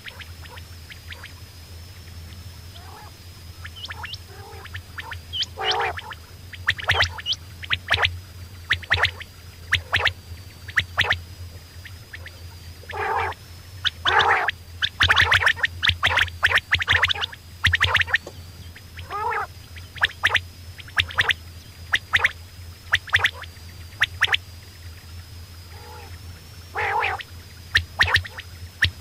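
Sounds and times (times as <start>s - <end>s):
steady low hum: 0.0s - 29.0s
quails chirping: 2.7s - 3.1s, 3.7s - 8.1s, 8.7s - 10.1s, 10.7s - 11.2s, 11.8s - 21.4s, 25.7s - 29.0s.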